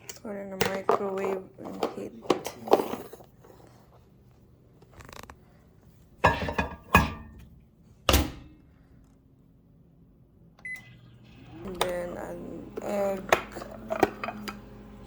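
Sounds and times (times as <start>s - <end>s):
microwave humming: 6.2s - 8.9s, 9.6s - 15.0s
dish knocking: 6.3s - 7.4s
microwave beep: 10.6s - 11.6s.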